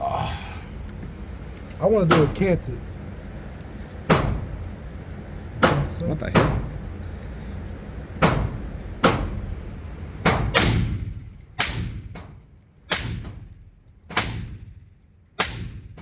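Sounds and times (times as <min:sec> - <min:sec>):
suppressed gunshots echoing: 0:10.6 - 0:12.1.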